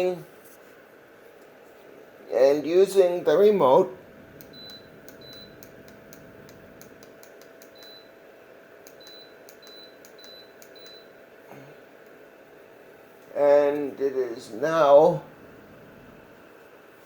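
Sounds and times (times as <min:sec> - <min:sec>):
faint steady hum: 0:00.0 - 0:17.0
heater short high beeps: 0:04.4 - 0:05.7, 0:07.7 - 0:08.1, 0:09.0 - 0:11.1.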